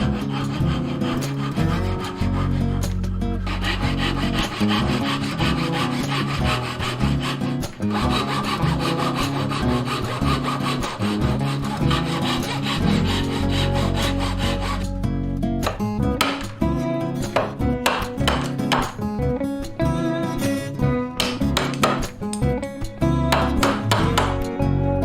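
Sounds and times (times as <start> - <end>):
hand tool rubbing wood: 0.0 - 15.0, 17.2 - 19.1, 21.2 - 22.2, 23.3 - 24.4
background music with bass line: 0.0 - 25.0.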